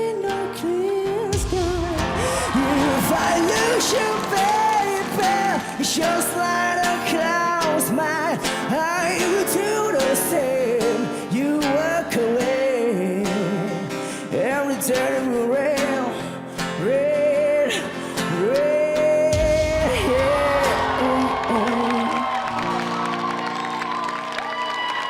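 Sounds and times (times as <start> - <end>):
person singing: 0.0 - 23.2
live band playing: 1.1 - 7.9, 19.4 - 24.1.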